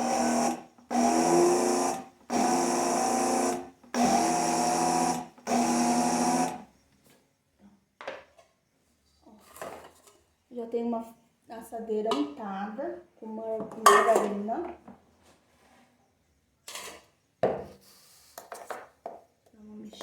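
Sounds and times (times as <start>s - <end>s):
blender motor whining: 0.0s - 6.7s.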